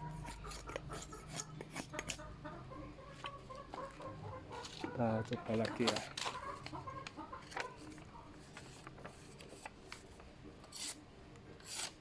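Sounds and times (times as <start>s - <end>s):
chickens clucking: 0.0s - 8.4s
knife rasping cutting strokes: 0.1s - 2.2s, 10.7s - 11.0s, 11.6s - 12.0s.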